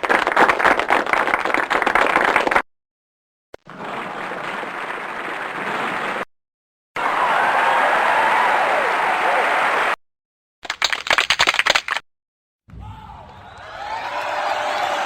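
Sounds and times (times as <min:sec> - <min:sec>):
close dense clapping: 0:00.0 - 0:02.6, 0:10.6 - 0:12.0
crowd applause: 0:00.0 - 0:02.6, 0:03.7 - 0:06.3, 0:07.0 - 0:10.0, 0:13.3 - 0:15.0.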